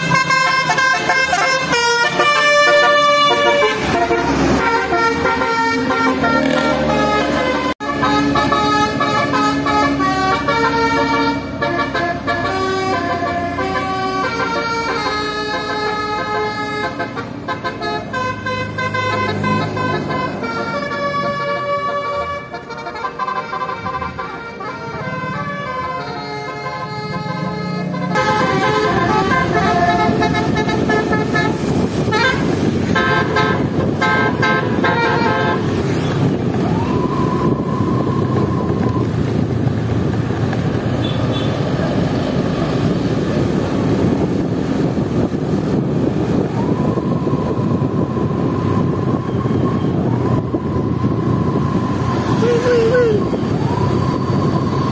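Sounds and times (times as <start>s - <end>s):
bus melody horn: 0.0s - 36.3s, 41.0s - 41.8s
engine and road noise: 0.0s - 54.9s.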